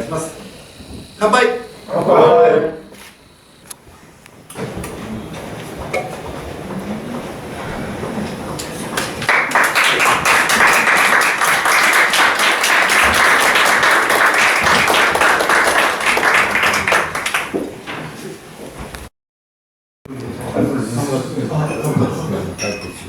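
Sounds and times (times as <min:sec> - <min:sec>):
people applauding: 0:08.6 - 0:17.8.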